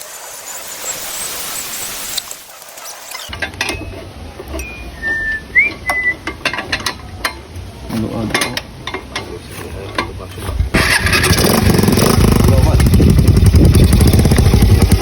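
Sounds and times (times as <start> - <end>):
short whistled notes: 4.6 - 6.2.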